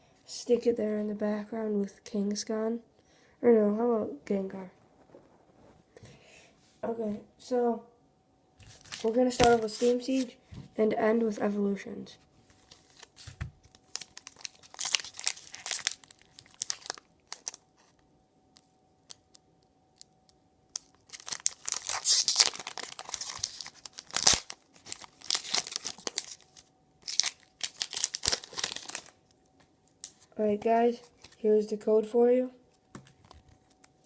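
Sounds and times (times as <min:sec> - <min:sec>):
foil wrapper tearing and crinkling: 0:08.7 - 0:10.2, 0:12.7 - 0:17.7, 0:20.7 - 0:29.2.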